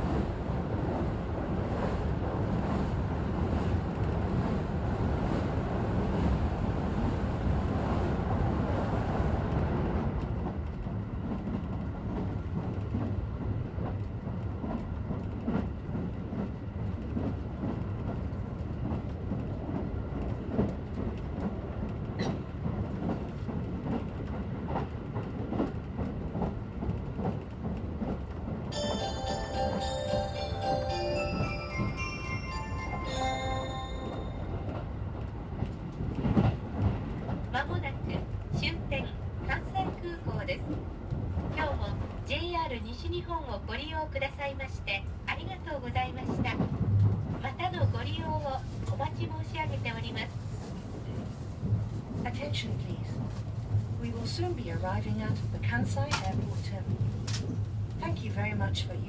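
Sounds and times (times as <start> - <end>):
train wheels rumbling on track: 0.0 - 59.0
bell-like chime melody: 28.7 - 34.8.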